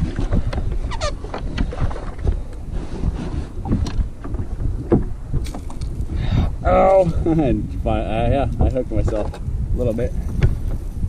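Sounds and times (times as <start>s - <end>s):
water lapping at a kayak: 0.0s - 7.9s
wind buffeting microphone: 0.0s - 11.0s
knocks and splashes: 3.6s - 6.2s.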